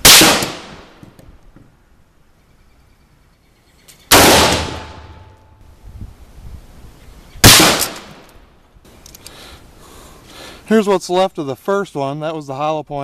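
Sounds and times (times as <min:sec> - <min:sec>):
rifle shots with echo: 0:00.0 - 0:01.0, 0:04.1 - 0:05.3, 0:07.4 - 0:08.2.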